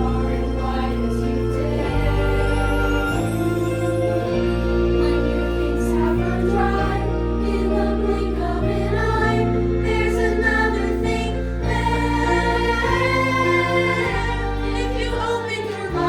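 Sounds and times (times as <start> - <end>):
young voices singing in chorus: 0.0 - 3.4, 5.0 - 16.0
backing track music: 0.0 - 16.0.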